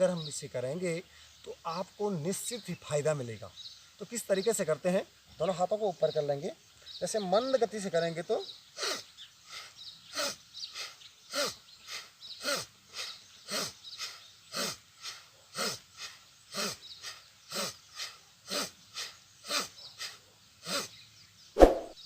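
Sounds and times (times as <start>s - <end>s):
forceful breaths through the nose: 10.6s - 20.9s.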